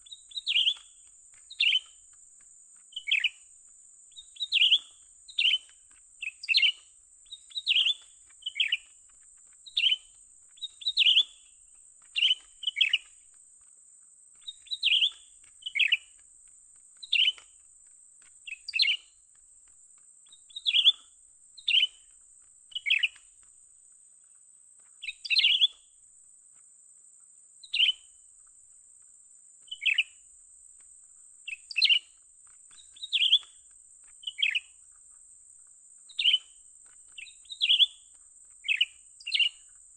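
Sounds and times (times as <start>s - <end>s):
bird chirps: 0.0s - 13.4s, 14.3s - 19.3s, 20.2s - 23.4s, 24.2s - 26.0s, 27.6s - 28.6s, 29.6s - 30.3s, 31.4s - 39.8s.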